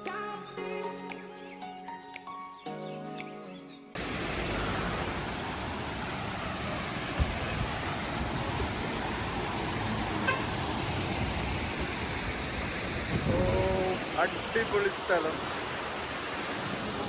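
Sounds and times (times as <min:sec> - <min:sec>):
waterfall rushing: 0:04.0 - 0:17.0.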